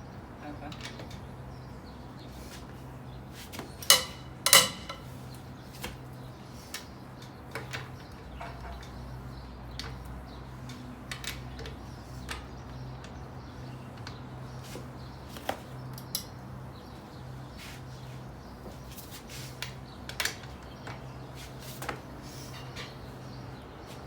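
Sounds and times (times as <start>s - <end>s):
lug wrench clinking on wheel nuts: 3.8s - 5.2s.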